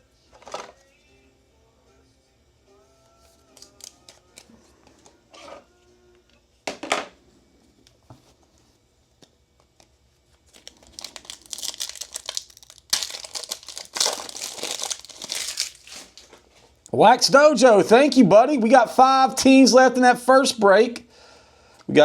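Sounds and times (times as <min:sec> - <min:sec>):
foil wrapper crackling: 0:10.4 - 0:16.4
foil wrapper ripping: 0:10.5 - 0:16.4.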